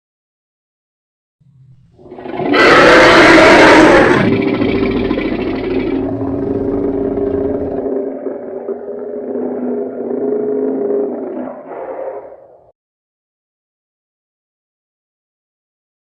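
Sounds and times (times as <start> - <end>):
steady drone: 1.4 - 9.7
dragon roar: 1.9 - 12.6.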